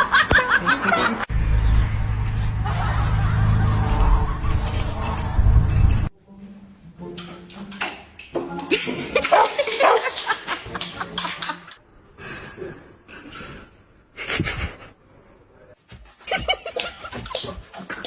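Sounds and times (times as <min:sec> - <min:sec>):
laughter: 0:00.0 - 0:01.3, 0:02.5 - 0:05.0, 0:08.7 - 0:11.8, 0:14.2 - 0:15.0, 0:16.2 - 0:18.0.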